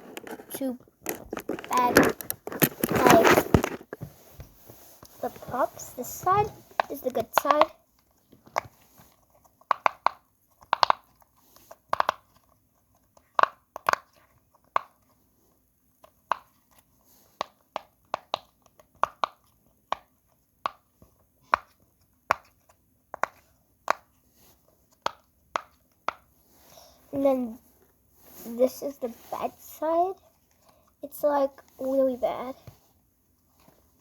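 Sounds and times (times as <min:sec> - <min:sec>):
fidget toy bubbles clicking: 0:09.7 - 0:11.1, 0:11.9 - 0:12.2.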